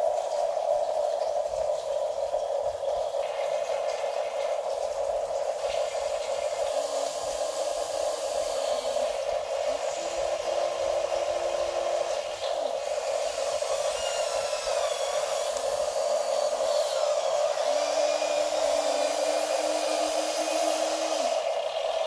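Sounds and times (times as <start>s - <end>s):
small electric motors whirring: 6.4s - 22.0s.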